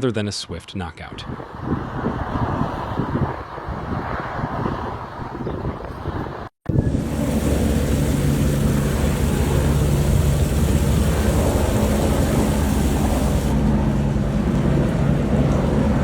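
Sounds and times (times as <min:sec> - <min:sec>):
engine drone: 0:06.7 - 0:16.0
loud rushing noise: 0:06.7 - 0:16.0.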